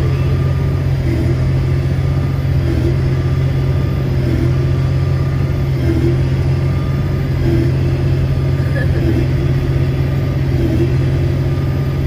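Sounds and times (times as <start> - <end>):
tractor engine under load: 0.0 - 12.0.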